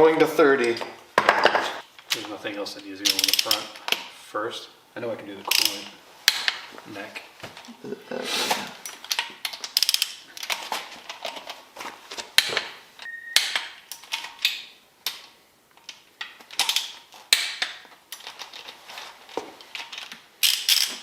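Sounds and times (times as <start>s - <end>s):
brief high tone: 13.1s - 13.5s.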